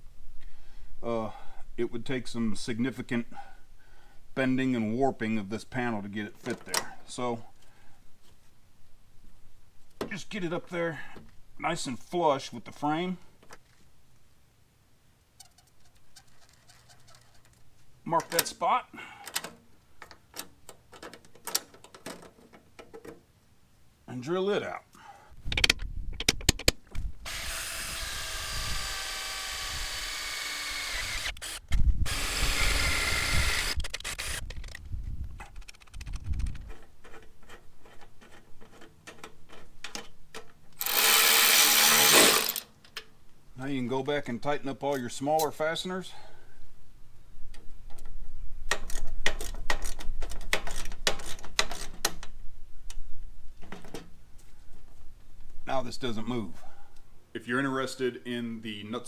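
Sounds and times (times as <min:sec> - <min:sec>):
handling clicks and knocks: 0:19.2 - 0:23.3, 0:47.6 - 0:52.4
power drill boring into steel: 0:27.3 - 0:34.4, 0:40.8 - 0:42.7
ratchet wrench clicking: 0:40.8 - 0:42.7.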